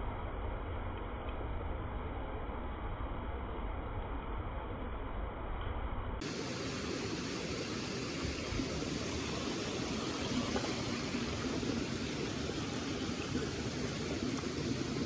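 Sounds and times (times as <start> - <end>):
stream water rushing over rocks: 6.2 - 15.0.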